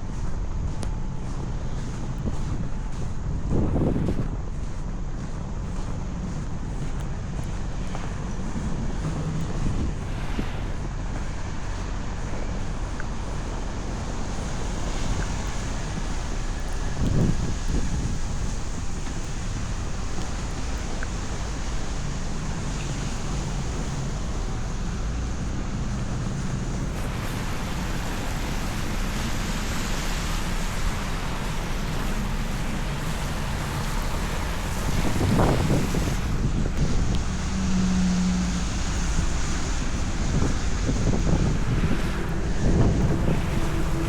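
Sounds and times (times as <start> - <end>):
traffic rumble: 0.0 - 44.0
wind noise on microphone: 0.0 - 44.0.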